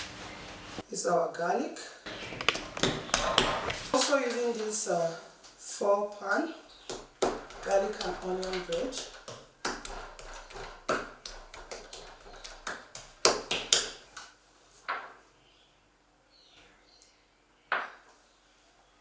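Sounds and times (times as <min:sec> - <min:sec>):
sharp taps and clicks: 0:02.1 - 0:04.0.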